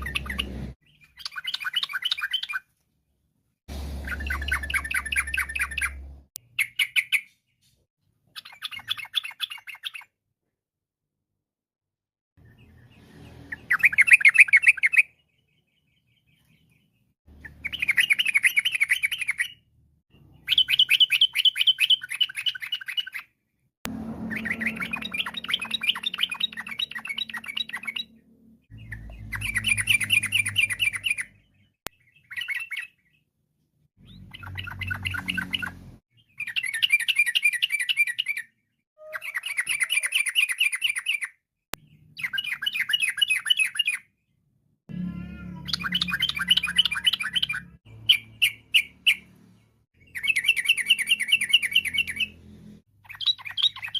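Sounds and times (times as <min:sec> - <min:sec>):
bird chattering song: 0:00.0 - 0:02.7, 0:04.0 - 0:10.2, 0:12.4 - 0:23.4, 0:24.2 - 0:33.2, 0:34.0 - 0:44.1, 0:45.6 - 0:52.4, 0:53.0 - 0:53.9.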